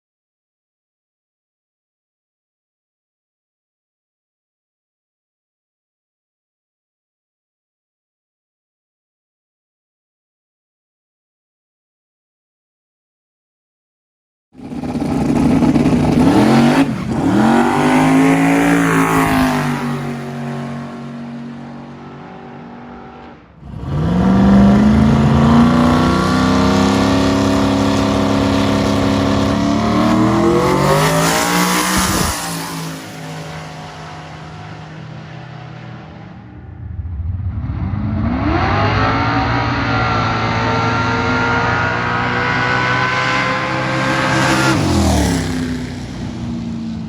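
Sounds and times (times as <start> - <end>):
drag car engine at full throttle: 14.6 - 47.0.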